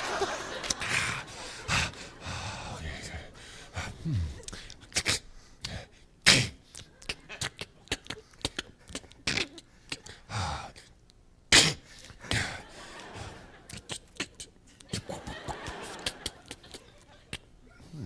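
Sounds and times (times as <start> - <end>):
mouth clicks and pops: 6.7 - 10.1.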